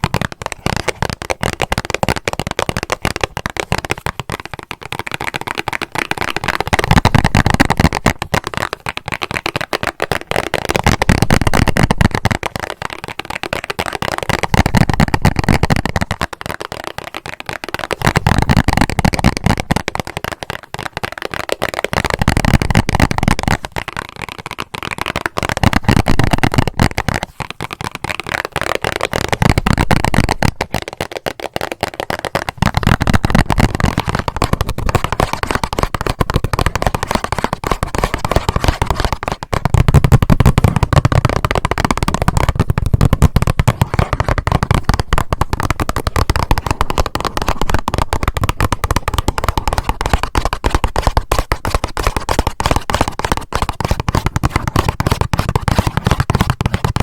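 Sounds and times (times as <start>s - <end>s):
fingernails tapping on a box: 0.0s - 57.0s.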